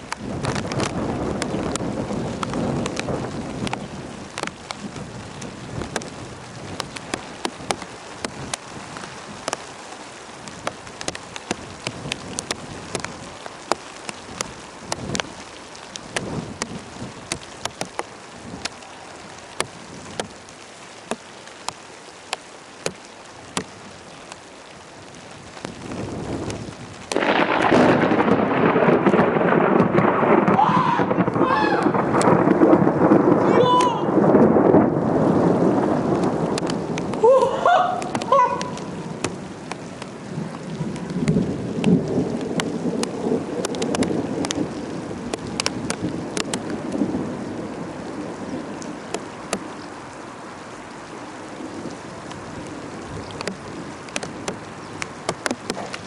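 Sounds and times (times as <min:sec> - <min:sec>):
raindrops tapping close by: 0:00.0 - 0:56.0
steady rain: 0:00.0 - 0:56.0
loud thunder roll: 0:27.1 - 0:37.2.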